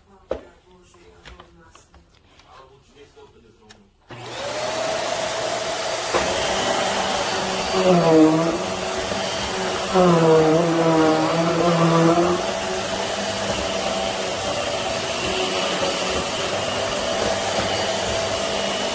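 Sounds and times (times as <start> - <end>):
vacuum cleaner running: 4.1 - 18.9.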